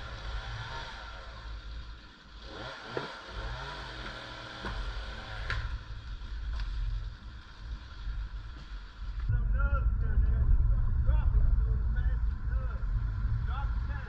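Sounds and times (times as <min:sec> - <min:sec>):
chainsaw revving: 0:00.0 - 0:08.5.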